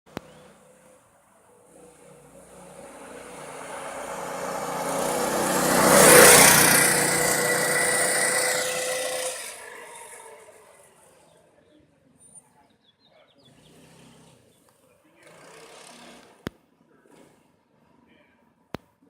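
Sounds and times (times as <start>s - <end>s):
go-kart engine passing by: 0.1s - 11.7s, 15.2s - 16.4s.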